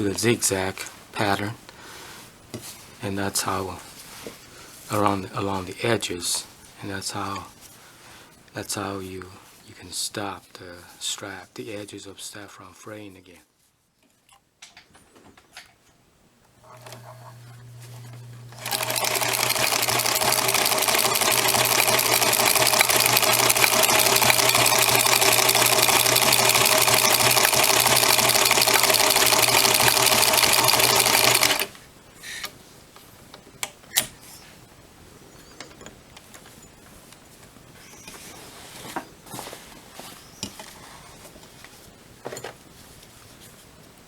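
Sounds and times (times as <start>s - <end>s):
sewing machine running: 16.6s - 31.7s.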